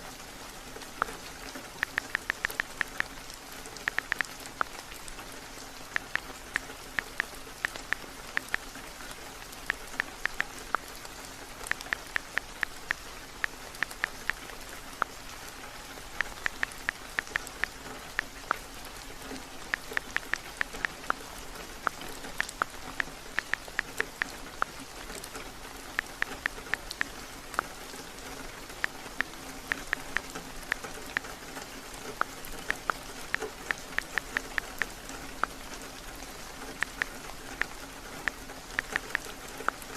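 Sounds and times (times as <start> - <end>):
steady rain: 0.0 - 39.9
tapping on touch-screen keyboard: 1.8 - 3.1, 3.9 - 4.7, 9.7 - 10.6, 16.2 - 18.6, 19.7 - 21.2, 23.4 - 24.7.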